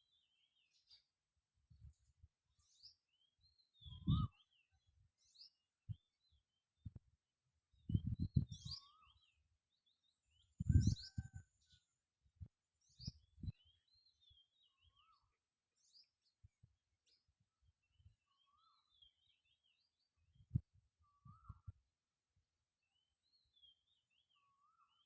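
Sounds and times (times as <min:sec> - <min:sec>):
small birds chirping: 0:00.0 - 0:21.8, 0:22.8 - 0:25.0.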